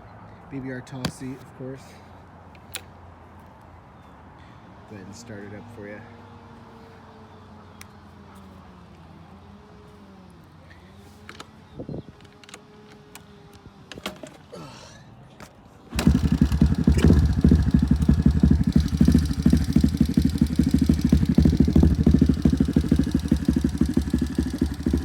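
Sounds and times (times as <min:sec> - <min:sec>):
motorbike engine starting and running: 0:15.9 - 0:25.0.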